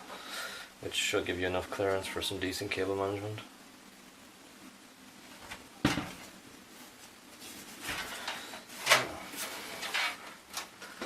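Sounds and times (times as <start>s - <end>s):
scraping and rustling: 5.2s - 11.0s.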